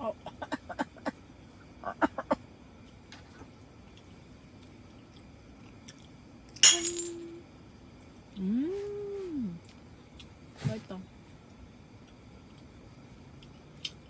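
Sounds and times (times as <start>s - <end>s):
glass clinking and ringing: 6.6s - 7.3s.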